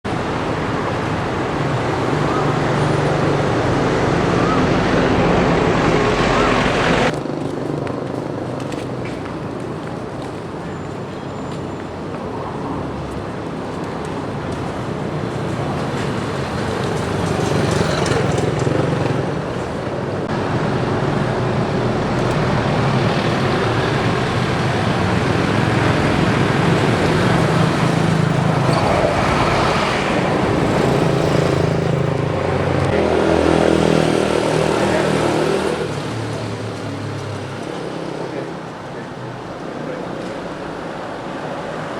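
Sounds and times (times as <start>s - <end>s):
motorcycle engines passing: 0.1s - 10.1s, 13.2s - 41.9s
car engines passing: 0.1s - 41.9s.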